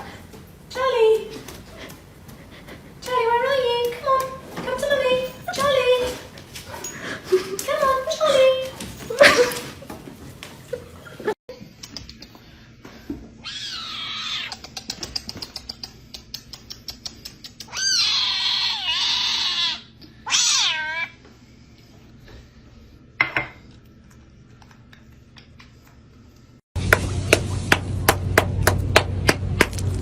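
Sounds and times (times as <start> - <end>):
cat meowing: 17.7 - 21.1.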